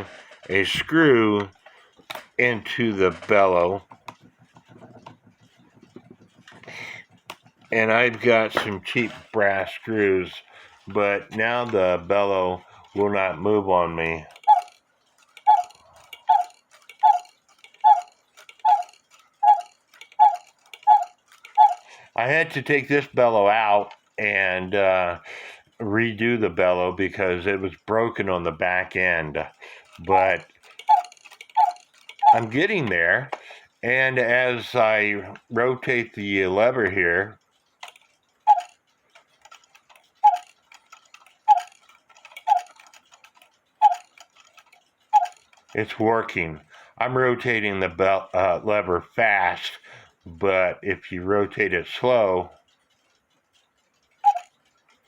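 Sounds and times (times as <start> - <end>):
mechanism clatter: 0.0 - 55.0
clock ticking with ringing note: 7.7 - 55.0
faint clicks: 51.5 - 55.0.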